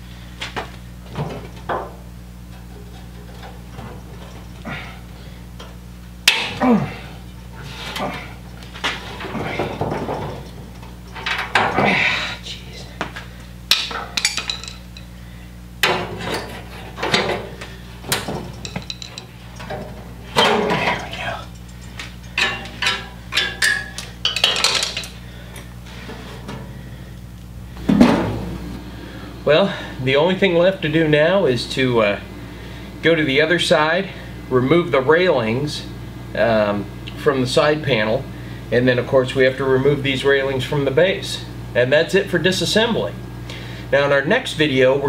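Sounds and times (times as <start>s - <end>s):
low electrical hum: 0.0s - 45.0s
metal tools clinking: 14.0s - 15.1s, 18.1s - 25.2s
metal parts clattering: 14.1s - 15.1s, 18.1s - 19.8s, 20.4s - 25.2s.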